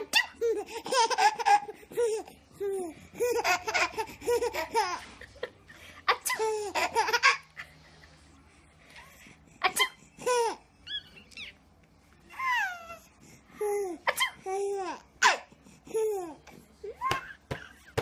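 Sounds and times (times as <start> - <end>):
baby laughing: 0.0 - 5.3, 6.1 - 7.5, 9.6 - 11.1.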